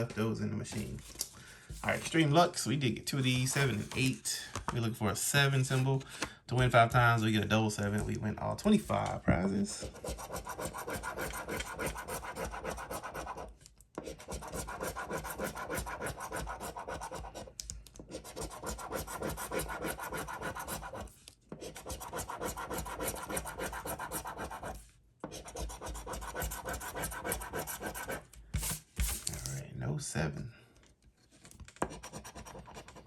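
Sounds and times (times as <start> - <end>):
scratching lottery ticket coating: 18.2 - 21.1.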